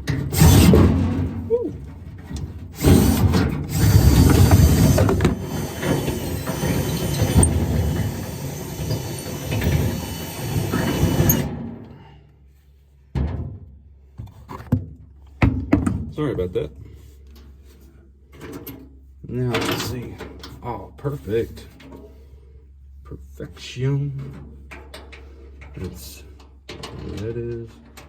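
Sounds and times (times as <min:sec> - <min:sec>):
power drill boring: 0:00.2 - 0:01.0, 0:02.8 - 0:11.5.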